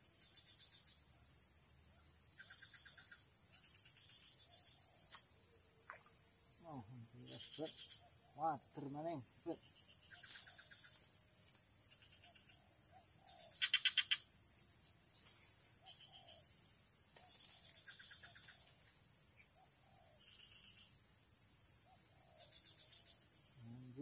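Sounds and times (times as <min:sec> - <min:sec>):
insect drone: 0:00.0 - 0:24.0.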